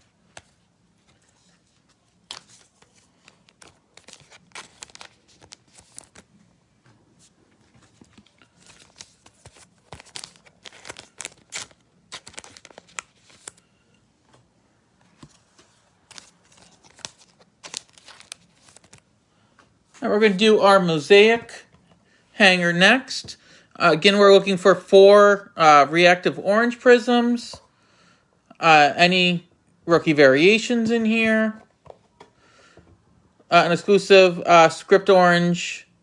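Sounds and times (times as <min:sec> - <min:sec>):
packaging rustling and ripping: 0:01.4 - 0:06.3, 0:07.8 - 0:13.6, 0:16.0 - 0:19.0.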